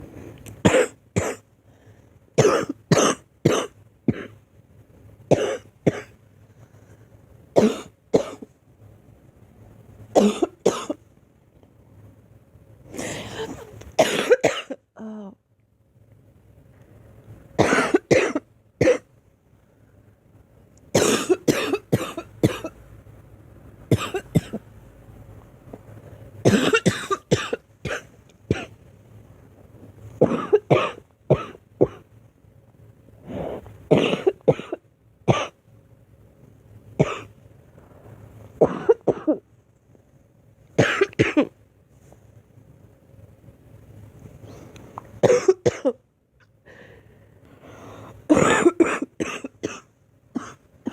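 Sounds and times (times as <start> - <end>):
girl coughing: 0.6 - 1.4, 2.4 - 4.3, 10.2 - 11.0, 13.0 - 15.1, 17.6 - 19.1, 21.0 - 22.7, 23.9 - 24.6, 26.5 - 28.7, 30.2 - 32.0, 33.9 - 35.6, 37.0 - 37.3, 38.6 - 39.4, 40.8 - 41.5, 45.2 - 46.0, 48.3 - 50.9.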